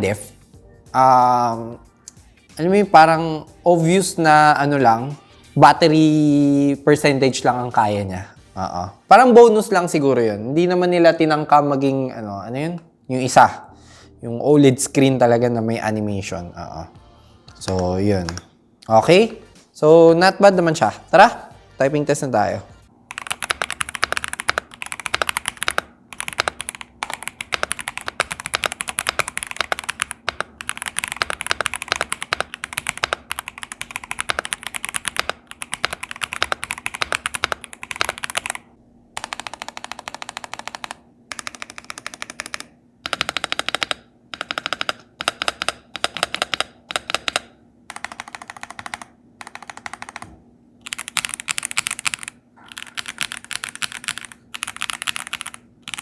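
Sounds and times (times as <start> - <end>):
mechanical keyboard typing: 23.1 - 56.0.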